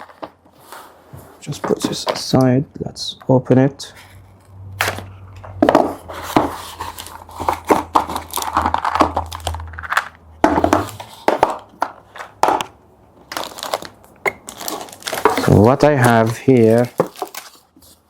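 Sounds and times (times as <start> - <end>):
cardboard packaging crinkling and tearing: 6.0 - 12.3, 13.2 - 18.0.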